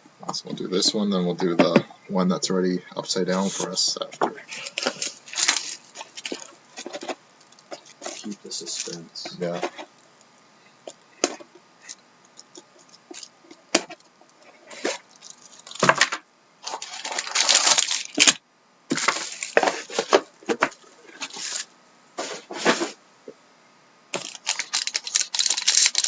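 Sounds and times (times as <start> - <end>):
packaging rustling and scraping: 3.3 - 10.0, 10.8 - 23.0, 24.2 - 26.0.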